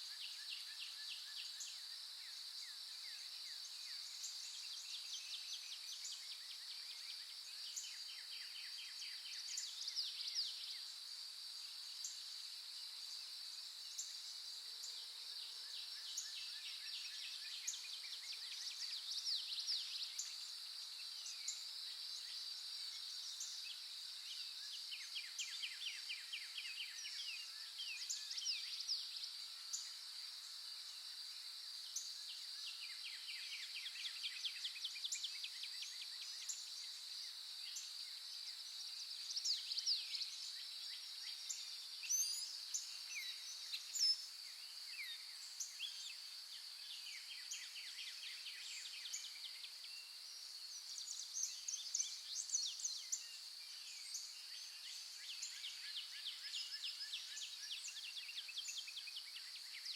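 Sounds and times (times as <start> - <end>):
songbirds chirping and trilling: 31.7 - 59.9.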